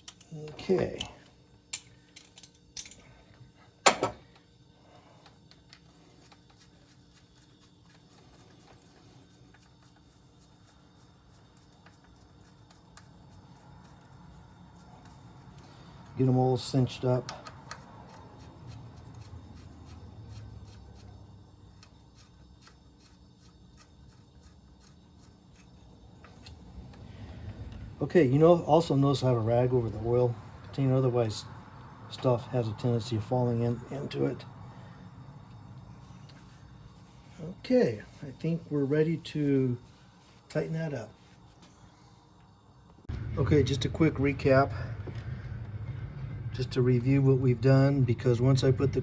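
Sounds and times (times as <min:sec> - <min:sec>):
light clicks of metal parts: 0:00.0 - 0:04.5, 0:14.8 - 0:21.1.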